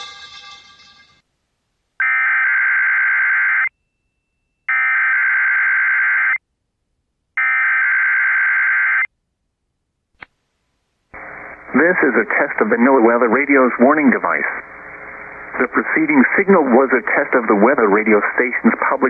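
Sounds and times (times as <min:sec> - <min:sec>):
buzzy data bursts: 0:11.2 - 0:16.6.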